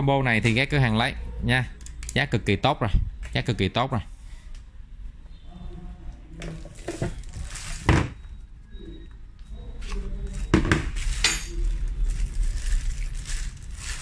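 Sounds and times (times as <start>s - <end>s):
ringing metallic clink: 11.2s - 11.6s.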